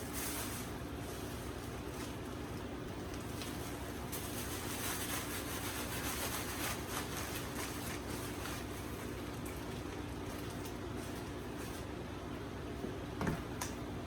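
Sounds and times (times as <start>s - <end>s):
rummaging through items in a box: 3.1s - 11.9s.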